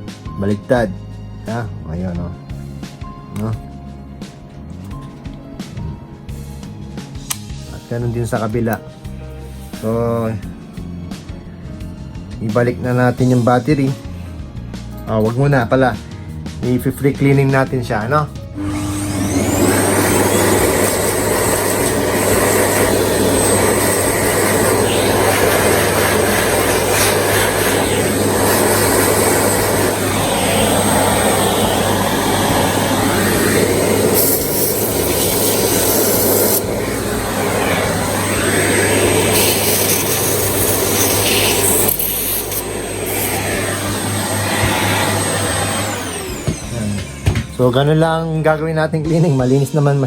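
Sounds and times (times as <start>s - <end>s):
electric cleaner motor whine: 18.5s - 47.8s.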